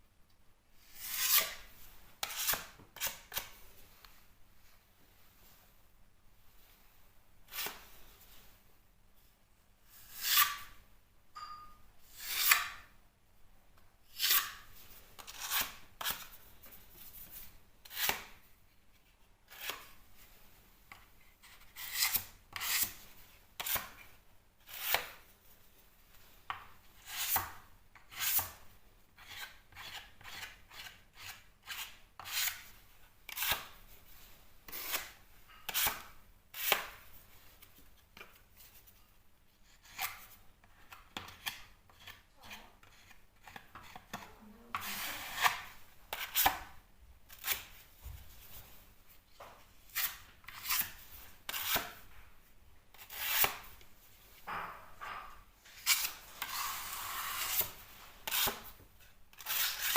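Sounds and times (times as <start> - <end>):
filling knife scraping plasterboard: 55.8 - 58.6.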